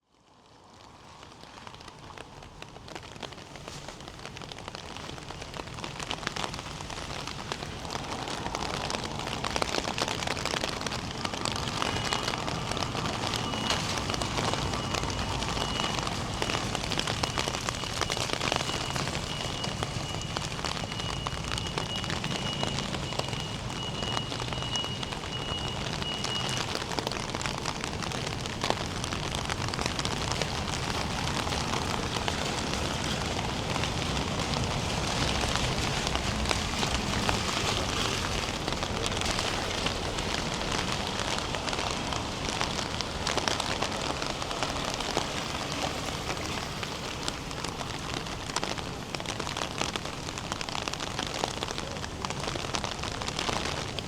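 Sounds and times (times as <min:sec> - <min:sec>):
rain on hard surfaces: 0:00.0 - 0:54.0.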